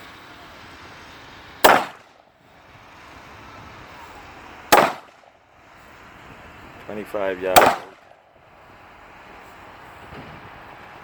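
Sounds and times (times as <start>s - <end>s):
rifle shots with echo: 1.6s - 2.1s, 4.7s - 5.2s, 7.5s - 8.1s.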